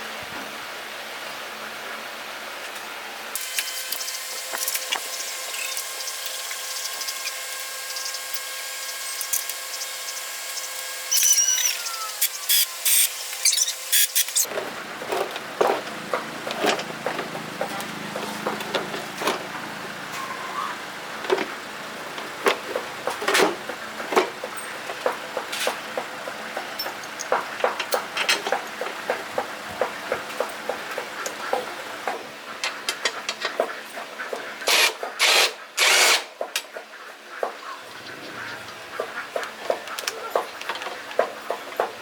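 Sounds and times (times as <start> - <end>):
power tool whining: 3.4 - 14.5, 34.7 - 36.3
clicks and knocks of tools: 22.2 - 29.2, 29.8 - 33.7, 34.3 - 36.8, 39.4 - 42.0.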